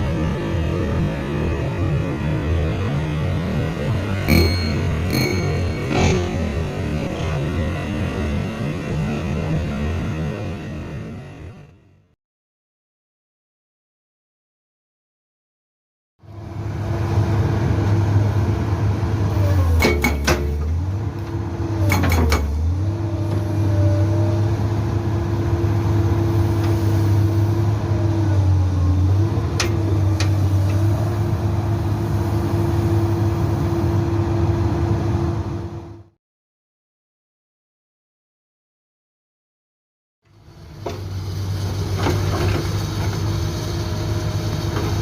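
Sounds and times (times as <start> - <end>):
excavator diesel engine running: 0.0 - 11.7, 16.2 - 36.1, 40.3 - 45.0
sharp metallic clanks: 4.3 - 6.9, 19.8 - 20.6.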